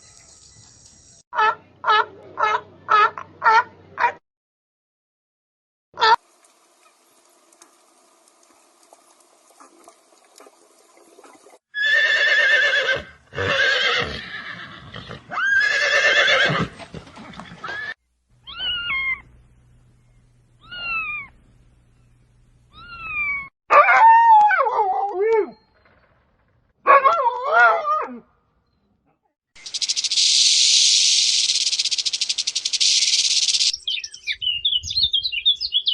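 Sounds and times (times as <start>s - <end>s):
horse whinnying: 11.8s - 19.2s.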